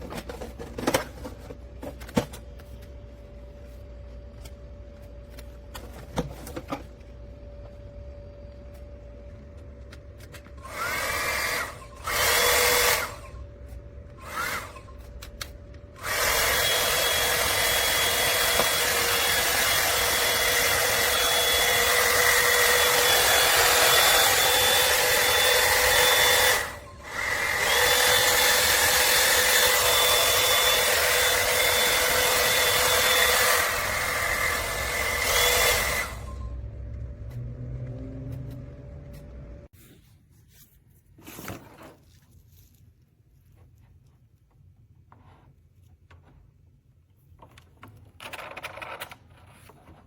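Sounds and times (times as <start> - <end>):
hot-air brush fan whining: 0.0 - 39.7.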